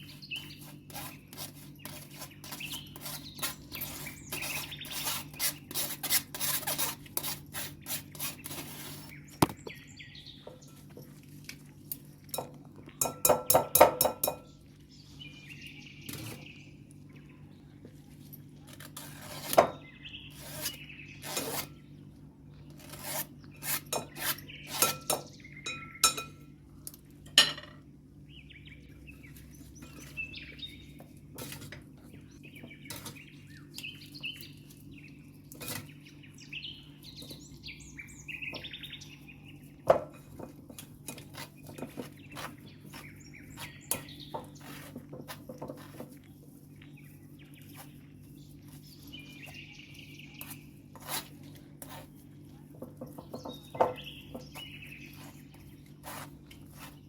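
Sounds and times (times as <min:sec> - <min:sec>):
faint birds chirping: 0:00.0 - 0:06.1, 0:07.4 - 0:13.2, 0:14.1 - 0:57.0
utensils clinking against dishes: 0:12.2 - 0:14.5, 0:23.9 - 0:26.5.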